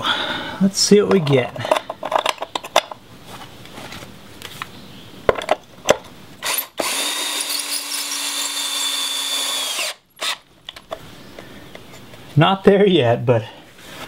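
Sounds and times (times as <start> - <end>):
power drill driving a screw: 6.4 - 10.4.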